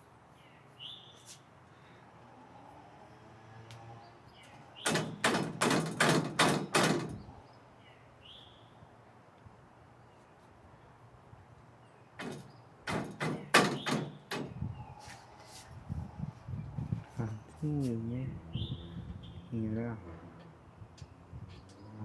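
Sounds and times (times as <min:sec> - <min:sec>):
machine parts knocking together: 0:04.9 - 0:07.2.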